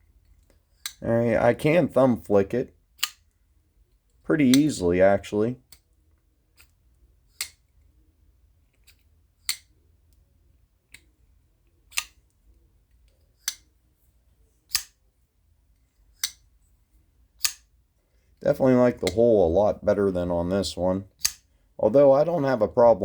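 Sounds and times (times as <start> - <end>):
folding knife blade snapping click: 9.4 - 9.7, 13.4 - 13.7, 14.7 - 15.0, 16.2 - 16.4, 17.4 - 17.7, 21.2 - 21.4.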